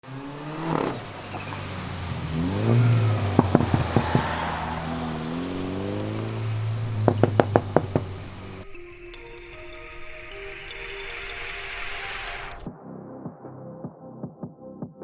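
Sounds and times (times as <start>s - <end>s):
car engine revving: 0.0s - 8.7s
sharp exhaust pops: 0.6s - 8.6s.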